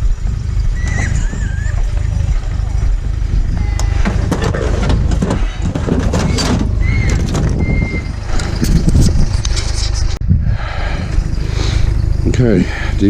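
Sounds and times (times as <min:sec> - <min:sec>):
low rumble: 0:00.0 - 0:13.0
electronics clattering in scrap pile: 0:03.8 - 0:07.7.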